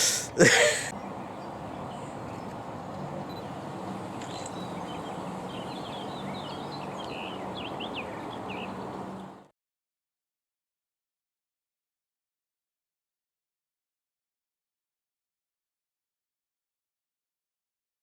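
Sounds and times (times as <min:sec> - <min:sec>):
small birds chirping: 0:00.0 - 0:09.4
outdoor background noise: 0:00.0 - 0:09.5.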